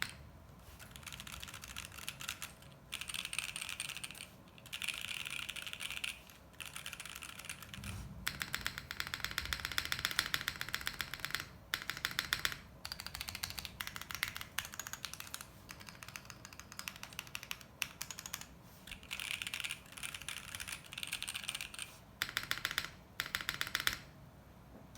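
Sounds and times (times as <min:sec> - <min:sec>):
mechanical keyboard typing: 0:00.8 - 0:24.1
low thump: 0:07.8 - 0:08.4.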